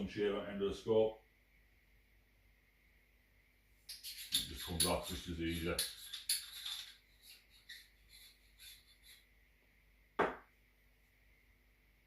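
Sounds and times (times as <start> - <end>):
hands rubbing rifle scope: 5.9 - 9.3
sharp knock: 10.2 - 10.4.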